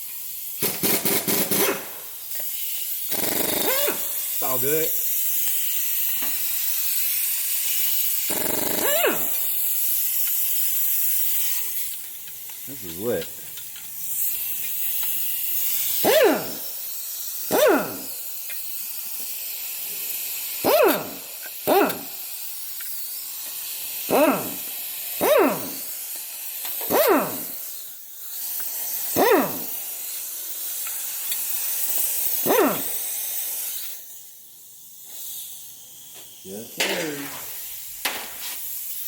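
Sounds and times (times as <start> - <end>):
impact wrench whirring: 0.6 - 39.0
steady hiss: 4.0 - 8.3, 9.3 - 17.5, 25.8 - 39.0.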